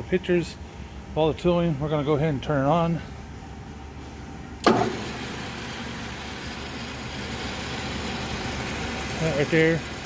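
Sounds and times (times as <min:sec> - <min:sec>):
lathe running smoothly: 0:04.7 - 0:10.0.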